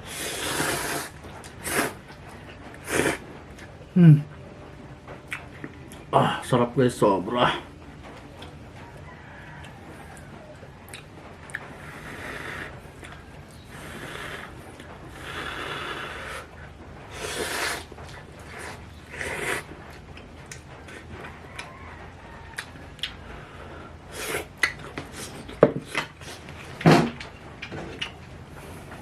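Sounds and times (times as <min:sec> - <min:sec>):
person slurping noodles: 0:00.0 - 0:02.0, 0:02.8 - 0:03.2, 0:13.7 - 0:14.5, 0:15.1 - 0:16.5, 0:17.1 - 0:17.9, 0:18.5 - 0:19.7.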